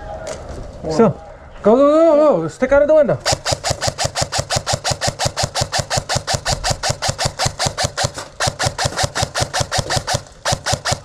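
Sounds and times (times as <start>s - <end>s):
airsoft rifle firing full auto: 3.3s - 11.0s.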